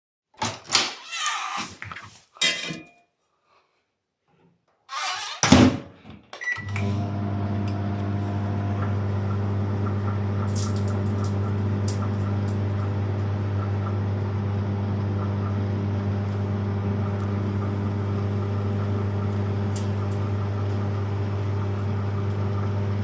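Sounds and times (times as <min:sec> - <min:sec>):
keypad beep: 0:06.4 - 0:06.8
microwave humming: 0:06.4 - 0:23.0.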